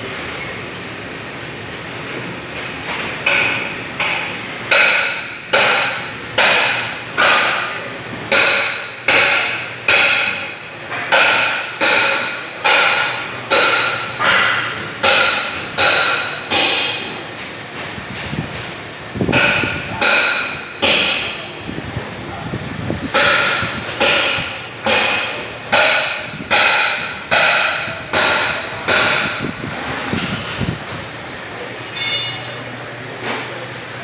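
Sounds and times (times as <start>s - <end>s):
sharp ringing metallic knocks: 3.3s - 17.9s, 19.3s - 21.6s, 23.1s - 31.2s, 31.9s - 33.6s.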